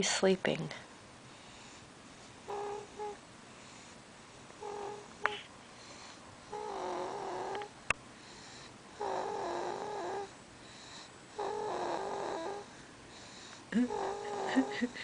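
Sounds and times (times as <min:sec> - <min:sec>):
soft whistly snores: 0:09.0 - 0:10.3, 0:11.4 - 0:12.7.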